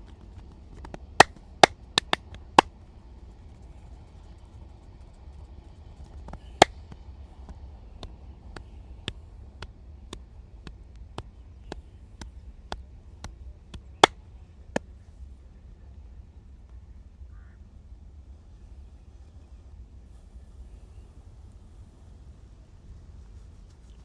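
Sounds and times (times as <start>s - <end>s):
sharp clicks from hands: 2.0s - 2.2s.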